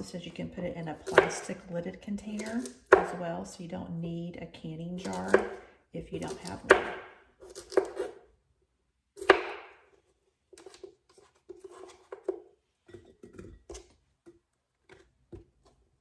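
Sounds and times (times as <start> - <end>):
knife chopping on cutting board: 1.0 - 1.5, 2.4 - 3.2, 5.0 - 5.6, 6.2 - 8.2, 9.2 - 9.8.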